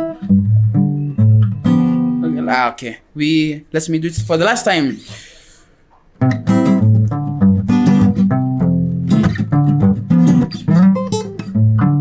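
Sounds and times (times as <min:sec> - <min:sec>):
guitar playing bass and melody: 0:00.0 - 0:02.6, 0:06.1 - 0:12.0.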